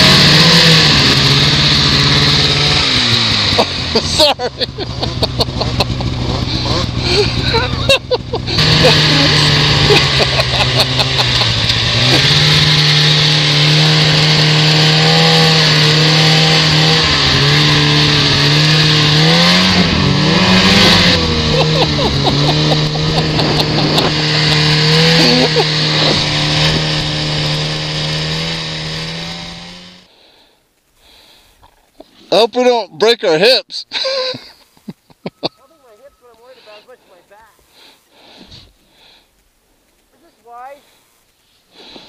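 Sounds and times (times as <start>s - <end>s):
vehicle engine running: 0.0s - 30.1s.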